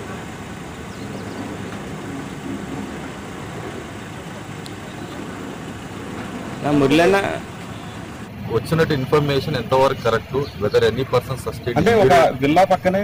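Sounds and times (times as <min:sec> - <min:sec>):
traffic with vehicle engines: 0:00.0 - 0:13.0.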